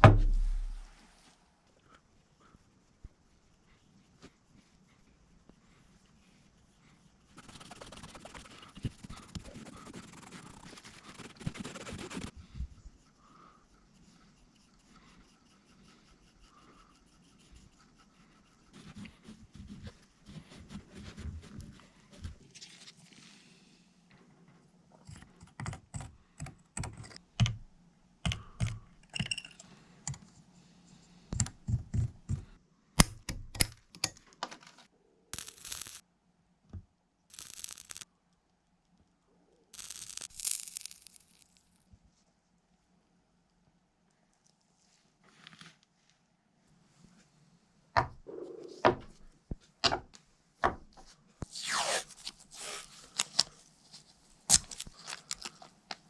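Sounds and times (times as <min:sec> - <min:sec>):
steady hiss: 0:35.4 - 0:36.0, 0:37.3 - 0:38.0, 0:39.8 - 0:41.7.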